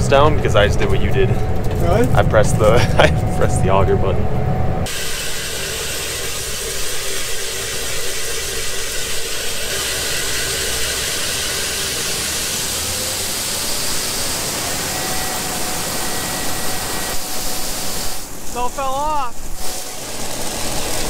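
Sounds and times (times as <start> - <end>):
machine hum: 0.0 - 21.0
corn pouring hiss: 4.9 - 21.0.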